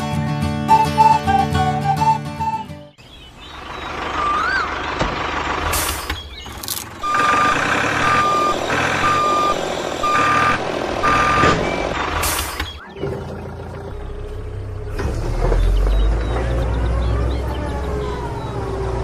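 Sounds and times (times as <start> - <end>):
truck engine running: 3.0 - 19.0
reversing alarm beeping: 7.0 - 12.8.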